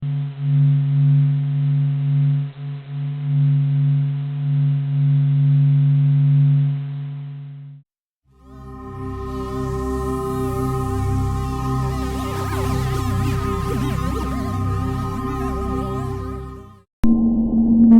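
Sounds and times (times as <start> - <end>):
deep droning hum: 8.4 - 17.9
drone with wavering higher tones: 8.4 - 17.9.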